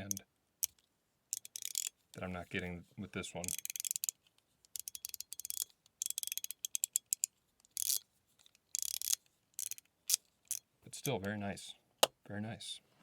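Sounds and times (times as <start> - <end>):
fidget slider rapid light clicks: 1.4 - 1.9, 3.4 - 8.0, 8.8 - 10.6.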